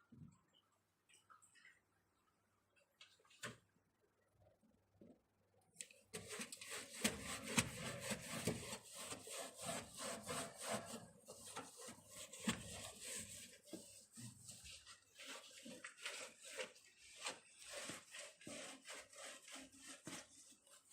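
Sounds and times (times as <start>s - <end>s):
scrubbing by hand: 6.2s - 20.9s.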